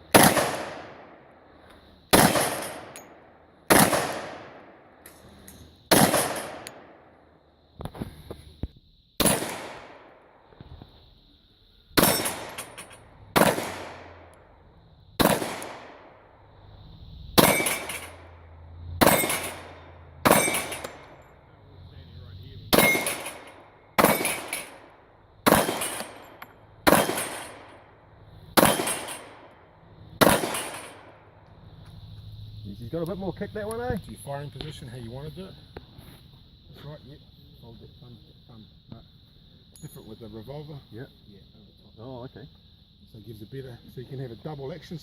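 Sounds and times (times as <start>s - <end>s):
pistol shots echoing: 0.0s - 1.2s, 2.1s - 4.9s, 5.9s - 7.0s, 9.2s - 10.2s, 12.0s - 14.3s, 15.2s - 16.2s, 17.4s - 18.3s, 19.0s - 21.1s, 22.7s - 27.9s, 28.6s - 29.5s, 30.2s - 31.2s.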